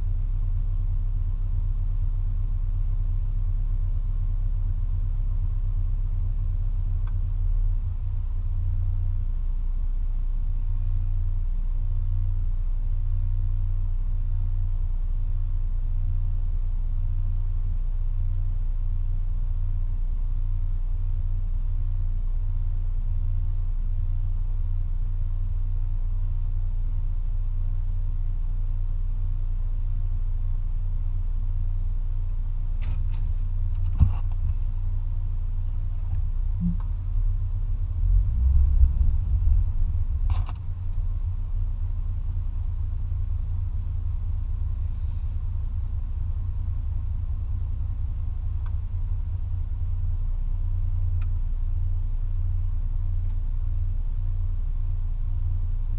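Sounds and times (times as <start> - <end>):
pickup truck engine rumble: 32.5 - 52.9.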